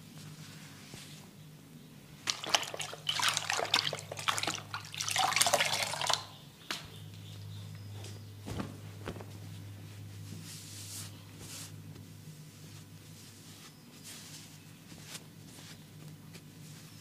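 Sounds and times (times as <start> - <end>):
steady low hum: 0.0 - 17.0
water splashing while washing face: 2.2 - 6.4.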